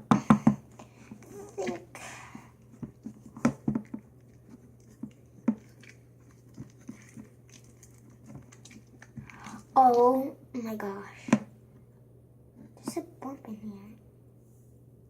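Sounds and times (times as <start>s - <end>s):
slime squelching when stirred: 0.0s - 11.6s.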